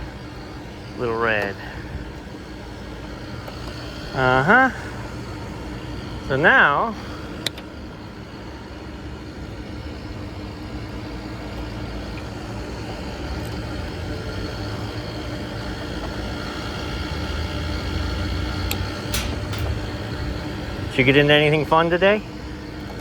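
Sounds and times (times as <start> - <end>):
low mechanical rumble: 0.0 - 23.0
sharp click: 18.7 - 20.0.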